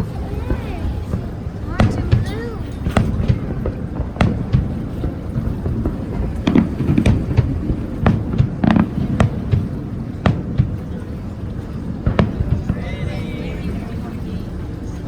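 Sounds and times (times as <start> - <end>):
fireworks bangs and pops: 1.0 - 11.1, 12.0 - 13.1.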